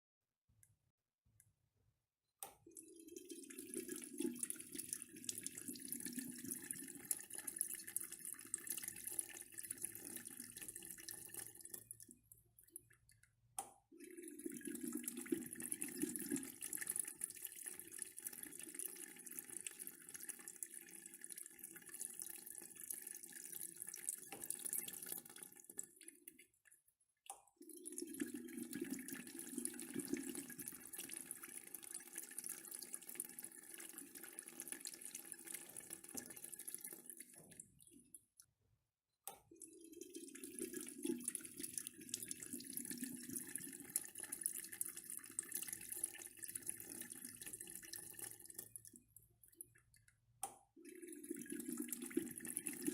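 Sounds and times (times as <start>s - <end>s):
water rushing in urinal: 2.7s - 12.0s, 13.9s - 26.4s, 27.6s - 38.0s, 39.5s - 49.8s, 50.8s - 52.9s.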